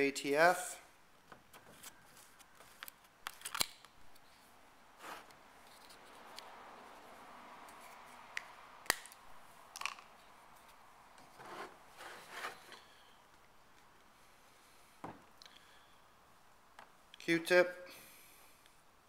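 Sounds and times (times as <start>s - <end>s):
rustling on workbench: 10.6s - 12.9s.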